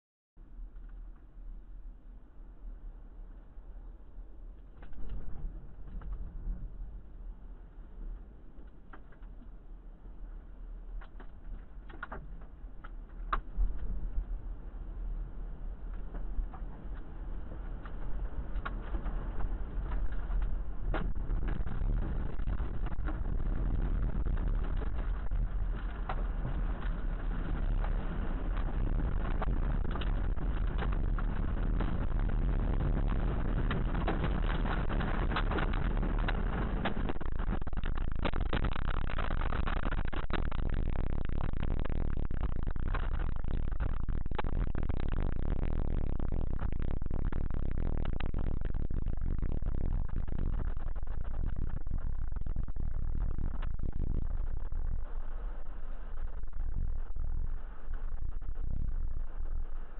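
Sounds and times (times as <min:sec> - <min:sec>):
wind rumble on microphone: 0:00.4 - 0:59.9
debris ticking on vehicle: 0:15.9 - 0:54.6.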